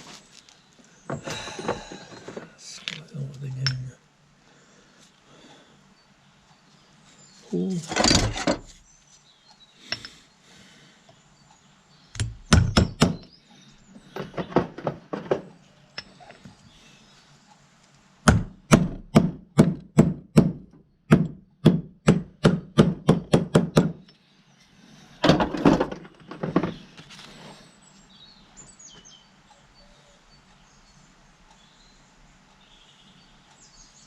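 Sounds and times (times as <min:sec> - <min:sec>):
clatter of handling: 0:14.0 - 0:16.5, 0:25.2 - 0:27.4.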